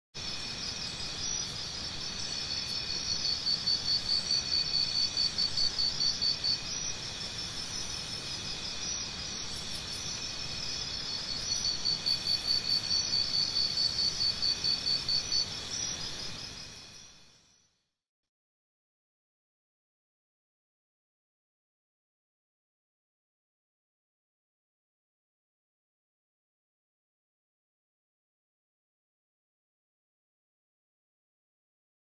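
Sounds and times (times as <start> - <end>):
insects trilling: 0.2 - 17.7.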